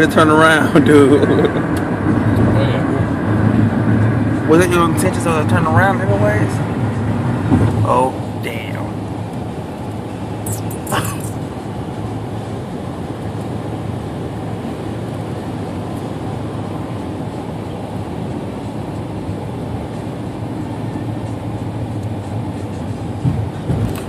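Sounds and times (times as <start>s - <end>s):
car road noise from inside: 0.0s - 24.0s.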